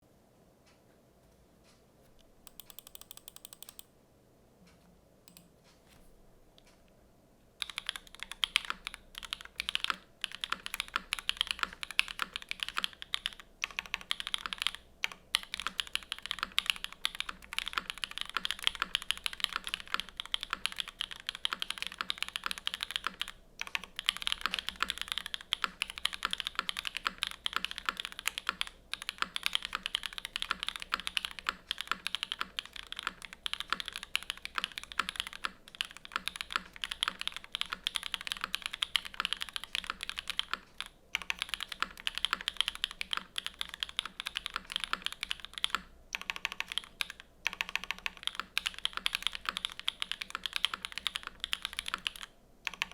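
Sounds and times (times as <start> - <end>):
fast typing on mechanical keyboard: 2.5 - 3.8, 7.6 - 52.9.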